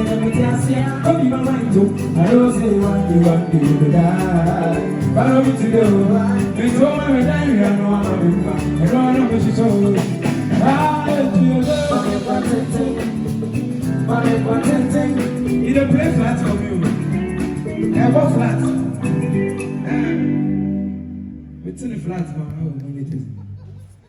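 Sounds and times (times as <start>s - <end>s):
live band playing: 0.0s - 21.6s.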